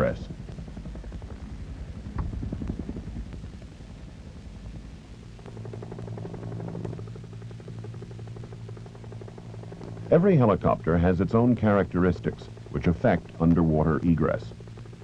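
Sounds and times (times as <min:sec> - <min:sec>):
helicopter engine drone: 0:00.0 - 0:15.0
helicopter rotor beat: 0:00.0 - 0:15.0.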